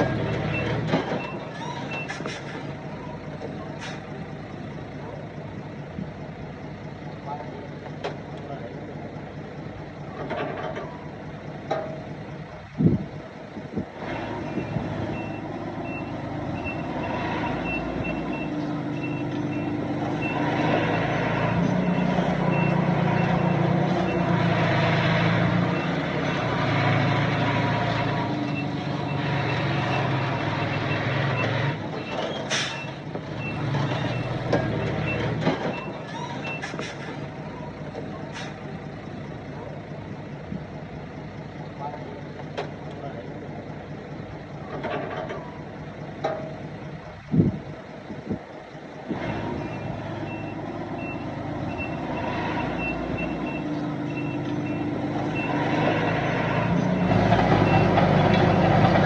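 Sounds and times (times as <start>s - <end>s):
diesel engine: 0.0s - 59.0s
reversing beeper: 14.4s - 24.4s, 49.3s - 59.0s.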